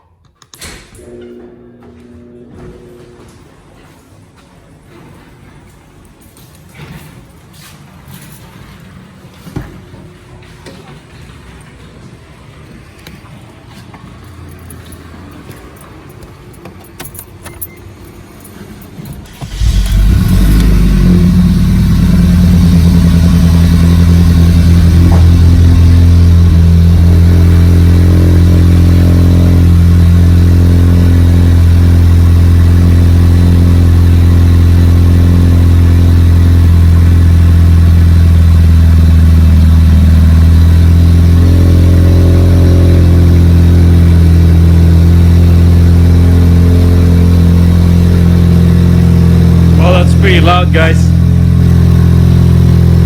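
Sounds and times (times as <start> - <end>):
car engine starting: 14.4 - 53.0
engine idling loudly: 19.3 - 53.0.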